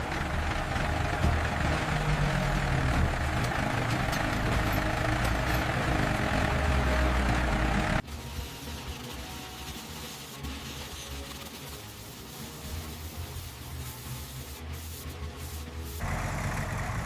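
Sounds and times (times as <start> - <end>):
truck engine idling: 0.0 - 8.0, 16.0 - 17.0.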